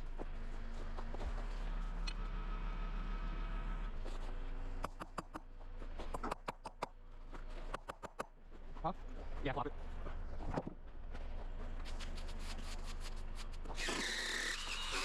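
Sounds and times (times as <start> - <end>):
steady mechanical hum: 0.0 - 15.0
sharp clicks and knocks: 4.8 - 8.4.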